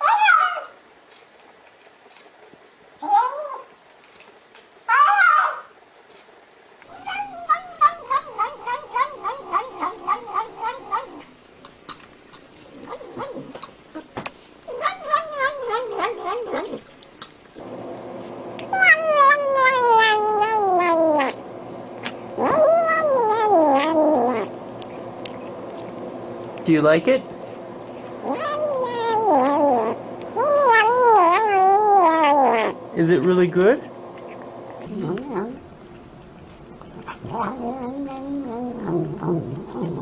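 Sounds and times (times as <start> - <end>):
cats meowing: 6.9 - 11.3, 14.7 - 16.9, 18.6 - 21.4, 22.4 - 24.6, 28.2 - 32.8, 34.8 - 40.0.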